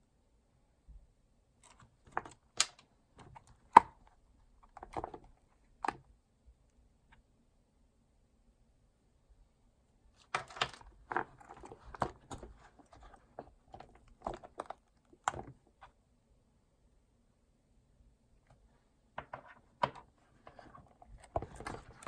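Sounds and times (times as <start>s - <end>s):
hands handling small hard objects: 10.2s - 15.4s.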